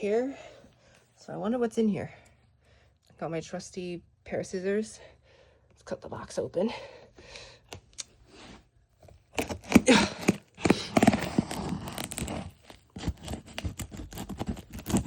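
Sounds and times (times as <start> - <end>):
cardboard and tape tearing: 9.2 - 15.0
scissors snipping: 13.0 - 15.0.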